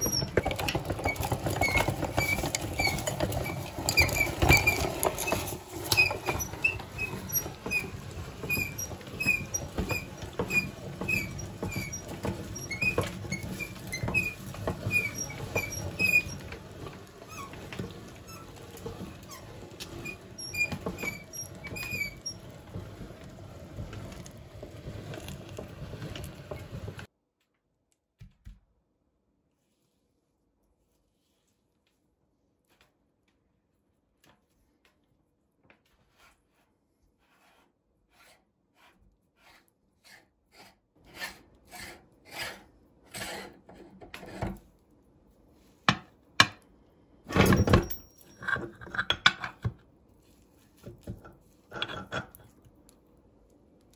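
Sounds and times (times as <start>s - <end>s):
meat grinder squeaking: 0.0s - 27.1s.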